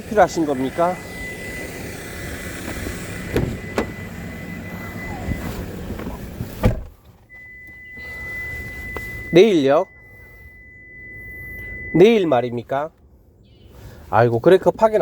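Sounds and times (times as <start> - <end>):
vehicle engine running: 0.0 - 12.3
loud thump: 3.3 - 4.0, 5.3 - 7.0.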